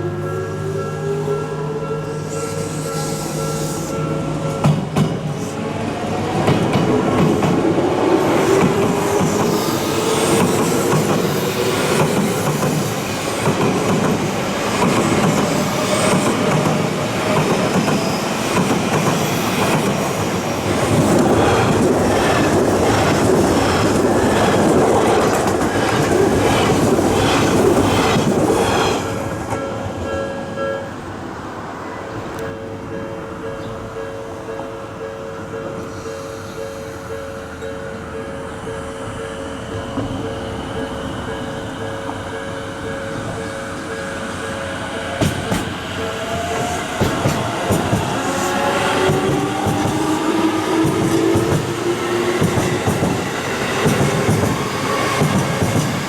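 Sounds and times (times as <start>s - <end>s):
level crossing warning bell: 0.0s - 5.3s, 29.5s - 48.4s
train wheels clacking over rail joints: 8.5s - 28.7s, 45.2s - 56.0s.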